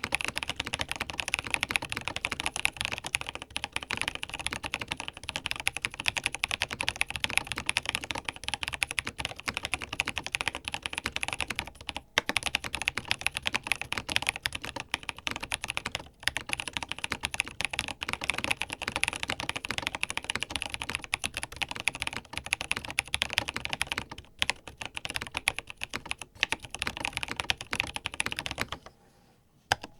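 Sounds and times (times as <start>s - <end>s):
fast typing on mechanical keyboard: 0.0s - 28.8s.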